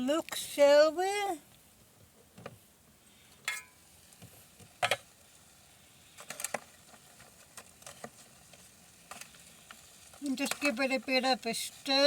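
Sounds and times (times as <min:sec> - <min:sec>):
food sizzling: 0:00.0 - 0:01.4, 0:03.0 - 0:12.0
metallic clinks on a pot: 0:03.4 - 0:03.8.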